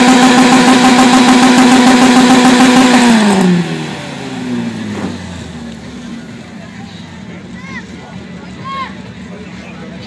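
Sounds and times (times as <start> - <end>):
car engine revving: 0.0 - 6.5.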